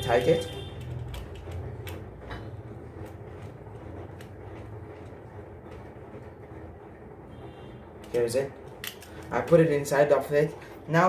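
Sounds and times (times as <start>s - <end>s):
steady low hum: 0.0s - 11.0s
clicks and scrapes of wiring: 0.2s - 2.4s.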